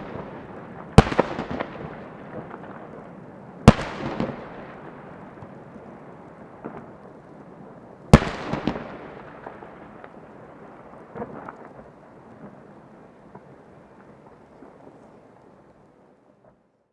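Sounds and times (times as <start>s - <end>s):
fireworks booming: 0.0s - 5.6s, 8.1s - 11.8s
fireworks popping and crackling: 0.0s - 15.2s.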